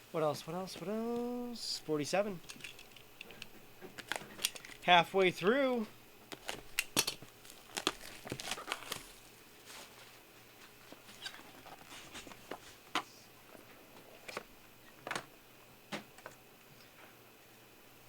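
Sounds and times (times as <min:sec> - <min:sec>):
packaging rustling: 0:02.2 - 0:12.9
cards clicking and tapping: 0:06.3 - 0:09.2.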